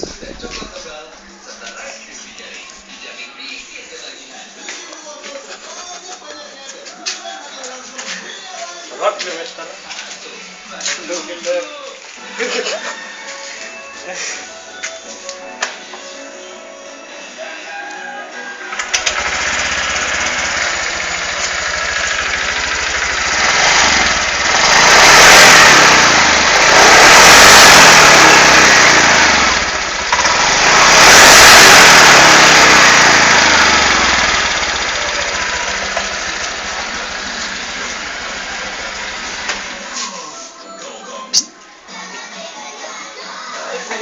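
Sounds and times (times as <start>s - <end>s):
drive belt spinning up: 18.7s - 39.8s
scooter engine idling and revving: 18.7s - 40.0s.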